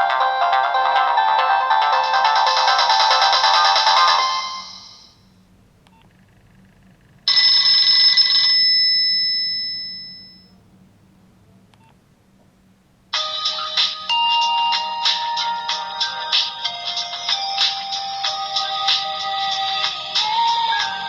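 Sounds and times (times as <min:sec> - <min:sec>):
mobile phone ringtone melody: 0:00.0 - 0:05.2, 0:13.2 - 0:21.0
bell-like chime: 0:04.1 - 0:05.2.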